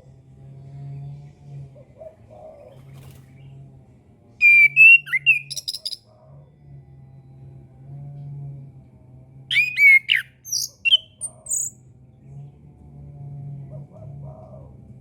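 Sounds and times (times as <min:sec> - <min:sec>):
low hum: 0:03.2 - 0:13.8
thrush singing: 0:04.4 - 0:06.0, 0:09.5 - 0:11.7.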